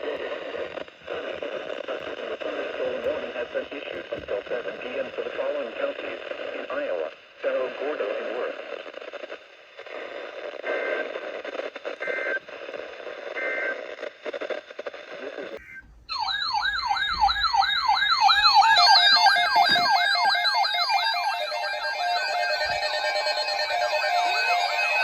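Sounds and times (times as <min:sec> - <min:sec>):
crackly radio audio: 0:00.0 - 0:25.0
electronic yelp siren: 0:13.4 - 0:13.7, 0:15.6 - 0:25.0
warbling alarm tones: 0:15.6 - 0:25.0.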